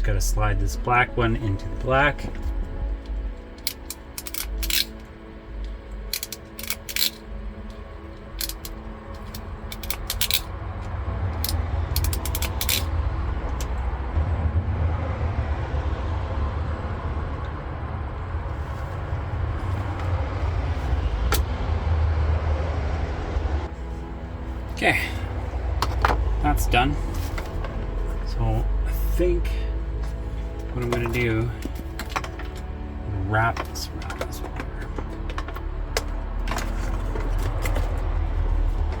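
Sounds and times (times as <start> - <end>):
faint background music: 0.0 - 39.0
low rumble: 0.0 - 39.0
hand crimper clicking: 3.6 - 5.0, 6.0 - 7.2, 8.4 - 10.5, 11.4 - 12.9.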